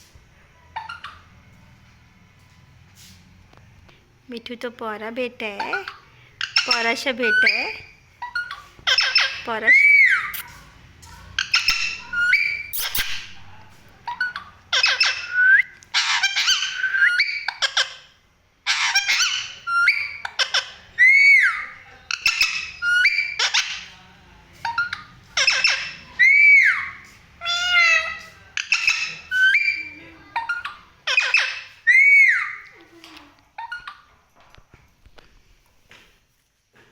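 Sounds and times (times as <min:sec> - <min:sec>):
parrot squawking and whistling: 0:06.4 - 0:10.5, 0:11.4 - 0:13.4, 0:14.1 - 0:18.0, 0:18.7 - 0:23.9, 0:24.7 - 0:32.7.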